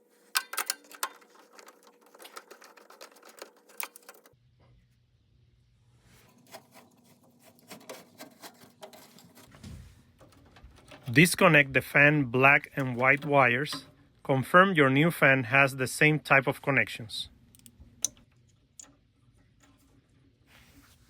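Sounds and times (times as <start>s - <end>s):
clicks and rattles of small parts: 0.3s - 4.4s.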